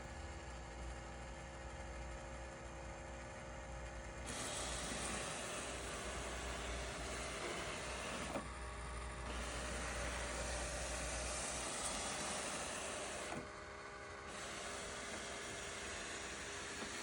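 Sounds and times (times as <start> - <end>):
robot vacuum whirring: 4.3 - 8.5, 9.2 - 17.0.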